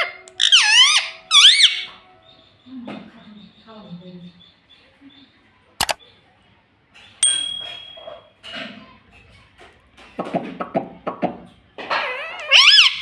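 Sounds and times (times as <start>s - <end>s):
parrot chattering calls: 0.0s - 2.0s, 11.9s - 13.0s
parrot click: 5.8s - 6.0s
ringing metallic ping: 7.2s - 8.2s.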